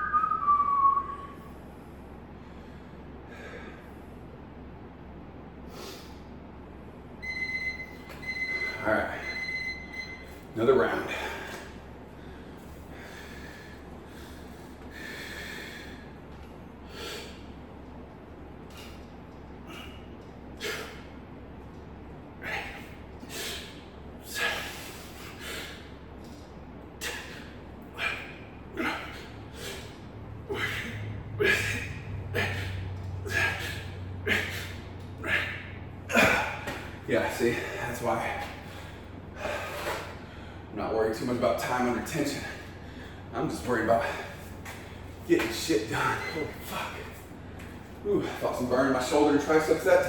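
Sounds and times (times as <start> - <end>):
man breathing hard: 1.7 - 4.2, 11.0 - 17.6, 22.4 - 26.4, 27.0 - 40.7, 42.3 - 43.3, 43.9 - 45.2.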